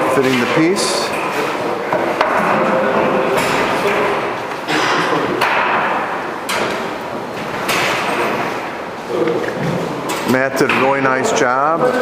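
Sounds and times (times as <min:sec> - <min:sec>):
sheet metal knocks and thumps: 0:00.0 - 0:08.7.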